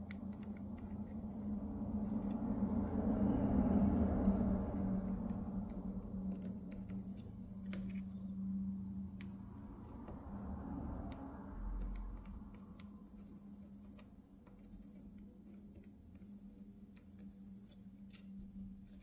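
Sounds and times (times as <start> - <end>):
steady low hum: 0.0 - 19.0
soft rumble: 0.4 - 13.8.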